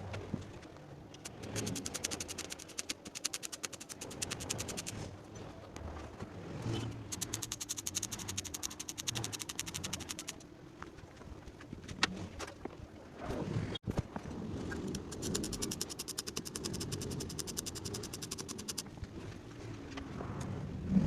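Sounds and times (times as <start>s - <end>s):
ratchet wrench clicking: 1.2s - 4.9s, 7.0s - 10.4s, 15.0s - 18.8s.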